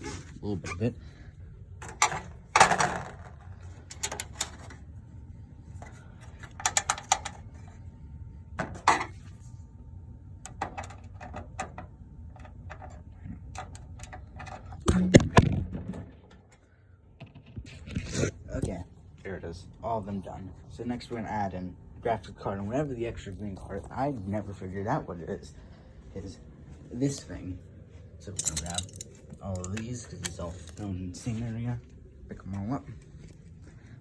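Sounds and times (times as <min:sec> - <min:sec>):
screwdriver clicks and metallic clinks: 0:03.9 - 0:04.7, 0:06.4 - 0:07.4, 0:28.3 - 0:30.9.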